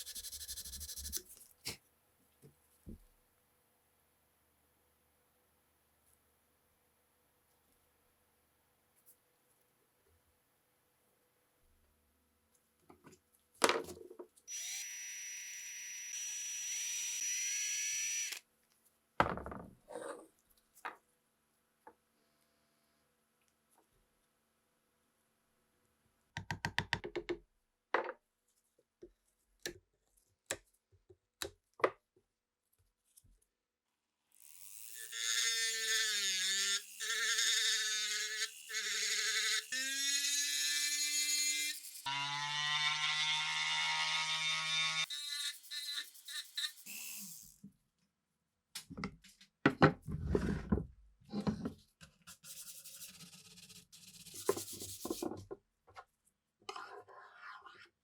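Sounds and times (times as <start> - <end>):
small motor running: 14.5 - 18.4, 34.4 - 43.7, 44.3 - 47.6.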